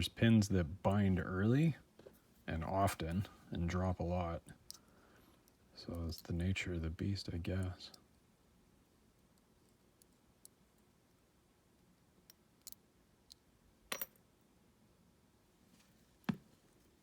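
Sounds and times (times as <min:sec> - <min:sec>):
small metal lock parts clicking: 0:12.2 - 0:14.2.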